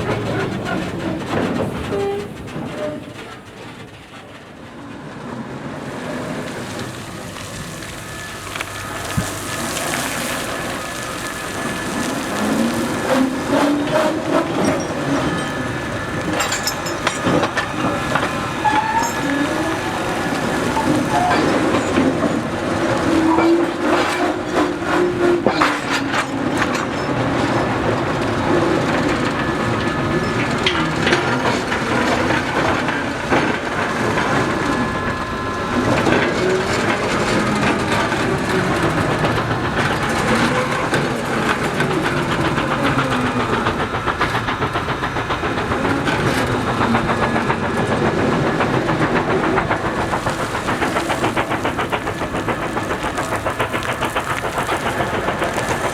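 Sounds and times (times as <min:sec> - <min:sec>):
train wheels clattering: 0:00.0 - 0:55.9.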